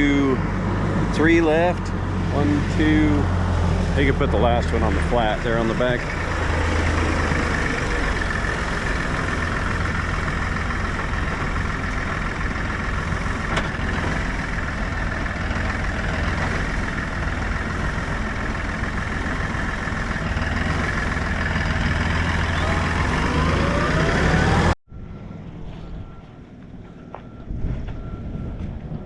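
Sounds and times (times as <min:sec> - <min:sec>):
tractor engine running: 0:00.0 - 0:29.0.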